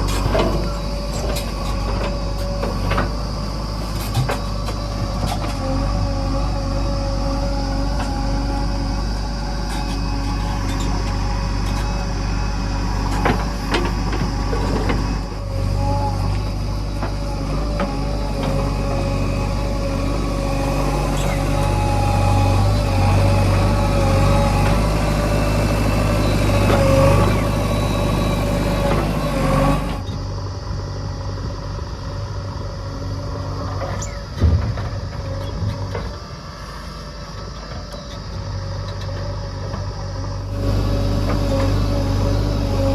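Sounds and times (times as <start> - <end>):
diesel engine running: 0.0 - 42.9
thump: 34.4 - 35.0.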